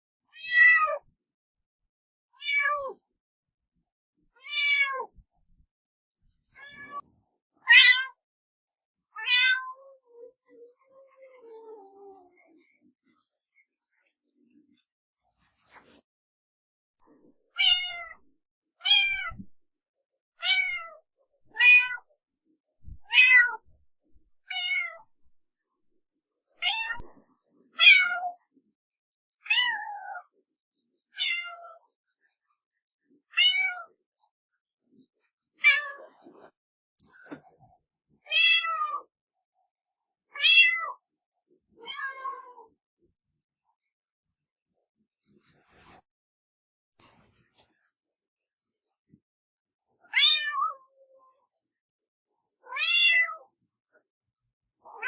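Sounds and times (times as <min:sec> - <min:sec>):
cat meowing: 0:00.3 - 0:01.0, 0:02.4 - 0:03.0, 0:04.4 - 0:05.1, 0:06.6 - 0:07.0, 0:07.7 - 0:08.2, 0:09.2 - 0:12.3, 0:17.6 - 0:18.2, 0:18.8 - 0:19.5, 0:20.4 - 0:22.1, 0:23.0 - 0:23.6, 0:24.5 - 0:25.1, 0:26.6 - 0:27.2, 0:27.8 - 0:28.4, 0:29.4 - 0:30.3, 0:31.1 - 0:31.8, 0:33.3 - 0:34.0, 0:35.6 - 0:36.2, 0:38.3 - 0:39.1, 0:40.4 - 0:41.0, 0:41.8 - 0:42.7, 0:50.1 - 0:51.0, 0:52.6 - 0:53.5.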